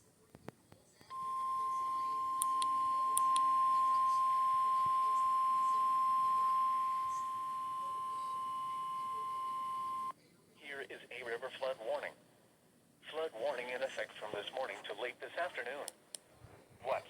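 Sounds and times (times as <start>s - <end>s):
high alert beep: 1.1s - 10.1s.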